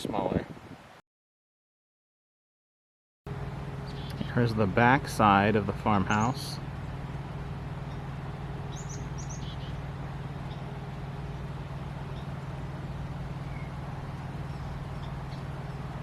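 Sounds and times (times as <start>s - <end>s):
low mechanical hum: 3.3s - 16.0s
bird chirps: 3.8s - 4.4s, 7.8s - 12.7s, 13.3s - 16.0s.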